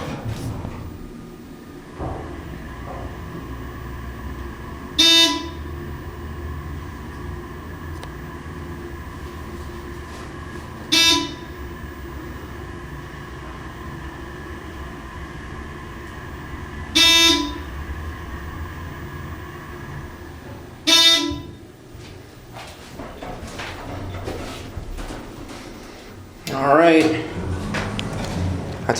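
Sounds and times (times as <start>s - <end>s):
steady low hum: 0.0s - 28.9s
buzzy horn-like beep: 5.0s - 5.6s, 10.9s - 11.6s, 17.0s - 17.8s, 20.9s - 21.6s.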